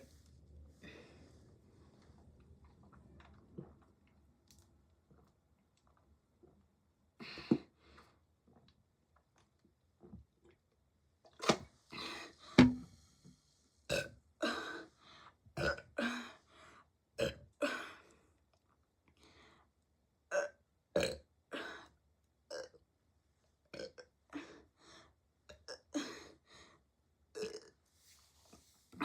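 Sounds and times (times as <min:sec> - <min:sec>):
person burping: 0:13.9 - 0:14.7, 0:15.6 - 0:16.2, 0:17.2 - 0:17.9, 0:20.3 - 0:21.7, 0:22.5 - 0:22.7.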